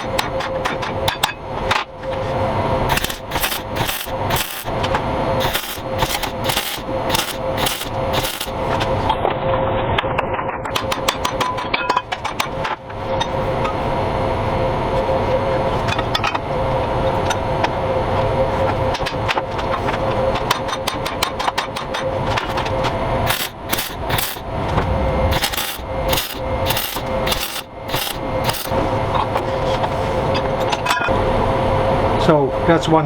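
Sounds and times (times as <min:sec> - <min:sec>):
steady hum: 0:00.0 - 0:09.3, 0:21.8 - 0:33.0.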